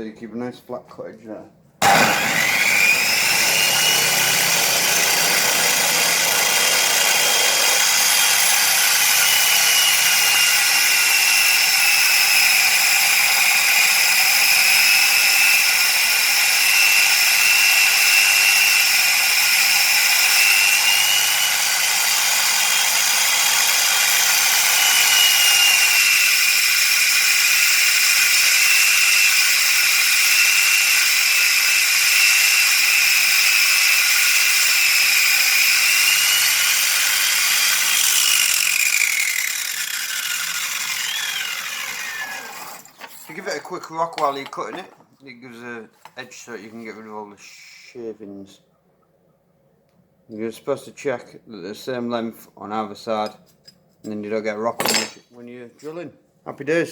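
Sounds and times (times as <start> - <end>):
drill bit on grinding wheel: 1.8 - 43.6.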